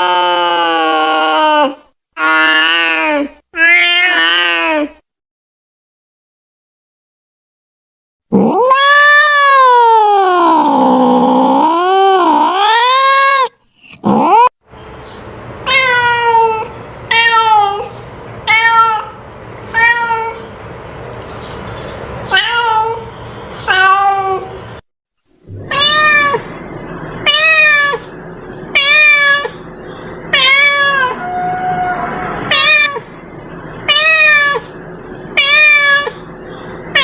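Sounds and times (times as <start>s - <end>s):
cat meowing: 1.2s - 4.9s, 8.4s - 11.4s, 15.7s - 17.9s, 18.5s - 20.5s, 22.3s - 23.0s, 23.7s - 24.5s, 25.6s - 26.6s, 27.2s - 28.1s, 28.7s - 29.6s, 30.3s - 33.1s, 33.9s - 34.8s, 35.4s - 36.3s.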